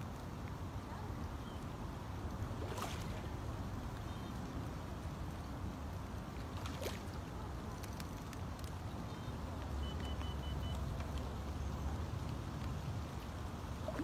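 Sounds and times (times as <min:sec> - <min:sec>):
short electronic beeps: 0:09.8 - 0:10.8.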